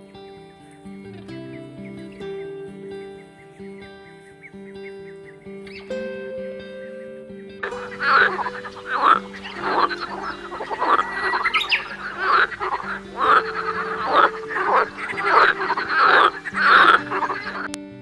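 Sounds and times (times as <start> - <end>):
soft background music: 0.0 - 18.0
frog croaking: 7.6 - 17.8.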